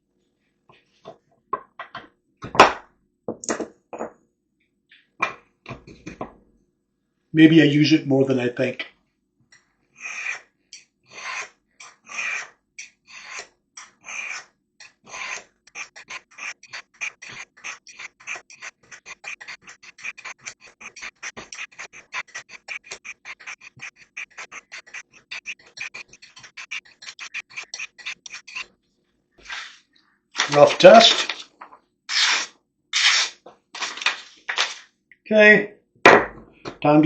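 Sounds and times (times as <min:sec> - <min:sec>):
knife scraping on sharpening stones: 0:10.0 - 0:28.7.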